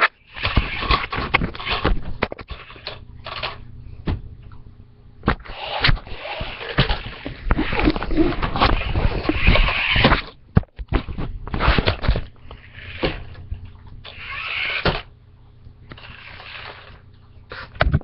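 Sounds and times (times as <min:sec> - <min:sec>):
toy car electric motors whirring: 0:00.0 - 0:03.6, 0:05.4 - 0:10.3, 0:11.6 - 0:13.4, 0:14.0 - 0:15.1, 0:15.9 - 0:17.8.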